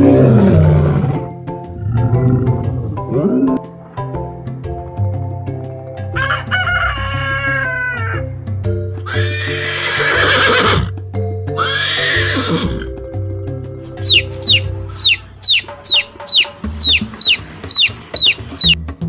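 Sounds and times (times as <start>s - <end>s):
background music: 0.0s - 19.0s
rooster crowing: 6.2s - 8.2s, 14.0s - 18.8s
chick peeping: 14.0s - 18.8s.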